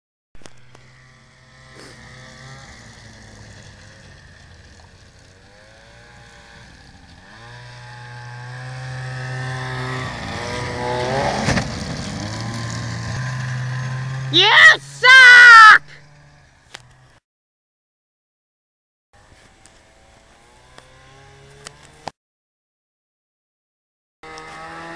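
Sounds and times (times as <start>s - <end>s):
snowmobile engine revving: 0.4s - 17.2s, 24.2s - 24.9s.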